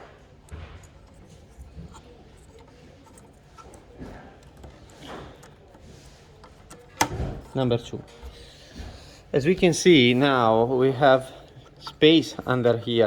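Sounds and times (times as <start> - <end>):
small handling clicks: 0.0 - 12.8.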